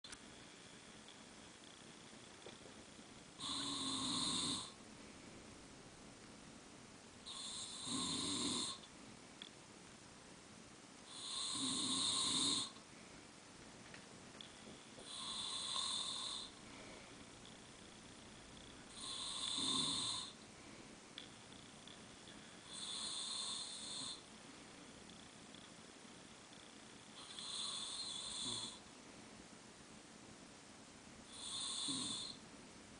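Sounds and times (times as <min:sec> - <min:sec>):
person snoring: 0:03.4 - 0:04.8, 0:07.3 - 0:08.8, 0:11.1 - 0:12.8, 0:15.0 - 0:17.0, 0:18.9 - 0:20.4, 0:22.6 - 0:24.3, 0:27.2 - 0:28.8, 0:31.3 - 0:32.4.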